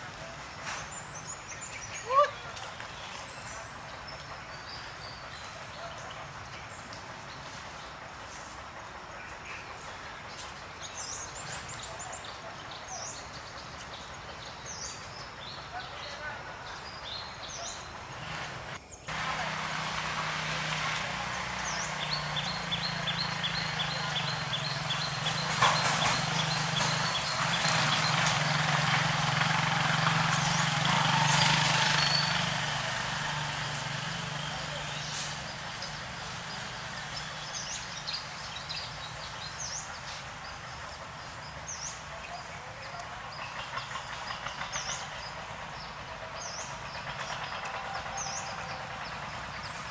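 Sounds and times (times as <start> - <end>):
birds chirping: 0.0 - 49.9
hiss: 24.9 - 38.4.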